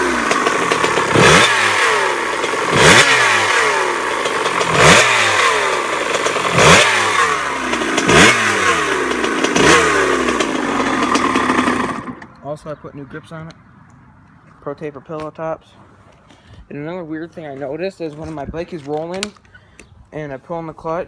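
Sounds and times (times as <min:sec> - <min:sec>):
dirt bike engine revving: 0:00.0 - 0:12.4
descending engine whine: 0:00.0 - 0:14.4.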